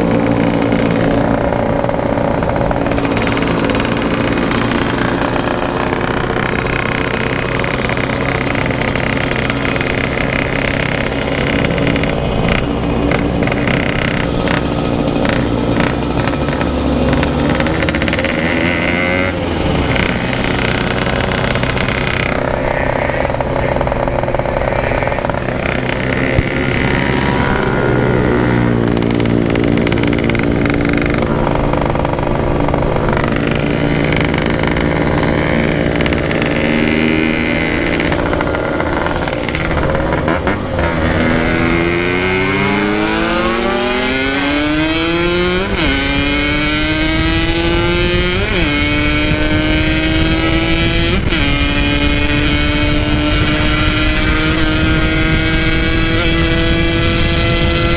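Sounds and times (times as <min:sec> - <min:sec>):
two-stroke motorcycle engine revving: 0:00.0 - 0:57.9.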